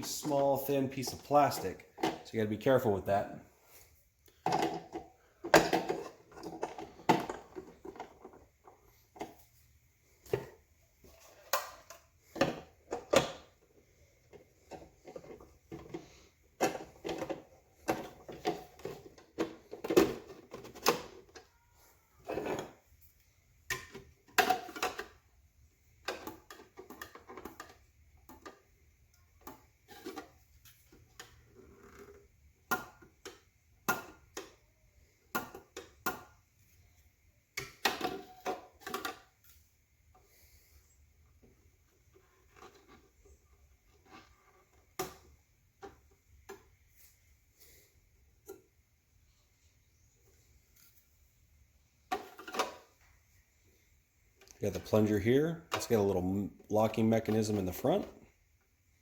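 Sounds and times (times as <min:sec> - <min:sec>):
plastic parts clicking and scraping: 0:04.2 - 0:09.6, 0:10.2 - 0:21.6, 0:23.7 - 0:25.2, 0:25.9 - 0:34.6, 0:37.6 - 0:40.6, 0:41.4 - 0:47.1, 0:52.1 - 0:53.1.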